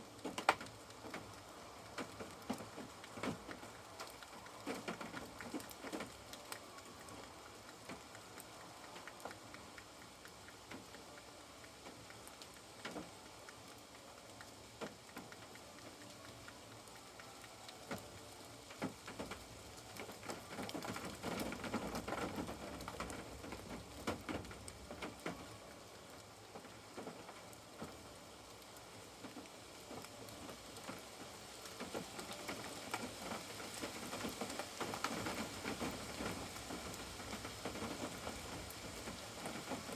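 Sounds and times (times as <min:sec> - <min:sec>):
rain on a caravan roof: 0:00.0 - 0:39.9
drips ticking: 0:01.0 - 0:25.5.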